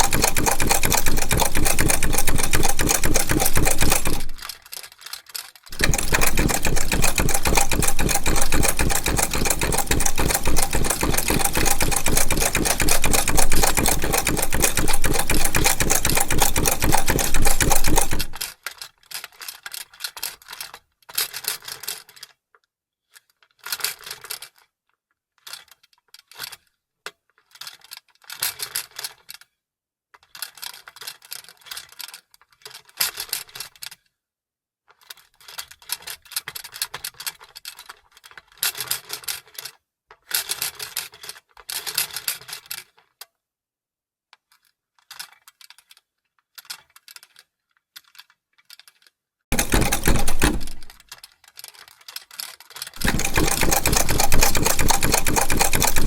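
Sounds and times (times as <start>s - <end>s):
mechanical clicking: 0.0s - 4.5s, 5.7s - 18.4s, 49.5s - 51.0s, 53.0s - 56.0s
sewing machine stitching: 0.0s - 4.5s, 5.7s - 18.5s, 49.5s - 51.0s, 53.0s - 56.0s.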